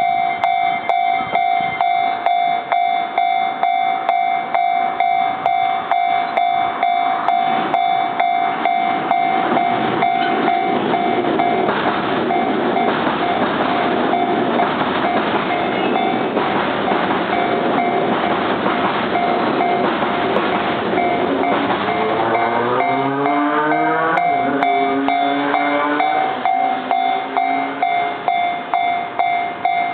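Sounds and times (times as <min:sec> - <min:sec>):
level crossing bell ringing: 0:00.0 - 0:11.7, 0:17.4 - 0:18.1, 0:19.2 - 0:29.9
train rumbling over rails: 0:00.0 - 0:29.9.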